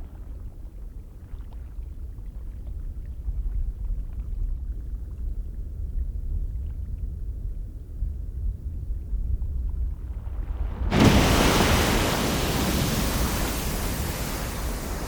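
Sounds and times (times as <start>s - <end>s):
geyser rumbling: 9.9s - 15.0s.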